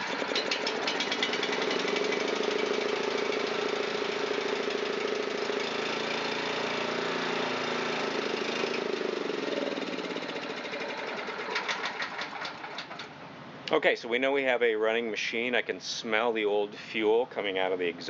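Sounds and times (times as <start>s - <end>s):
small engine running at full speed: 0.0s - 13.1s.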